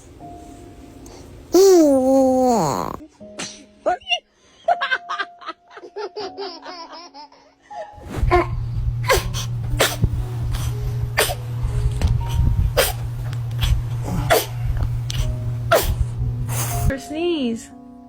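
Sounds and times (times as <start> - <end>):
baby laughing: 1.6 - 3.0, 5.8 - 7.5
music with low bass: 8.3 - 16.9.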